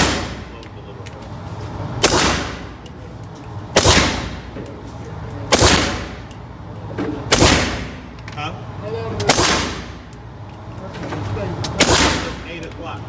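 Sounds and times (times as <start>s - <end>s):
gunshots with echo: 0.0s - 0.5s, 2.0s - 2.7s, 3.8s - 4.4s, 7.3s - 8.0s, 11.8s - 12.4s.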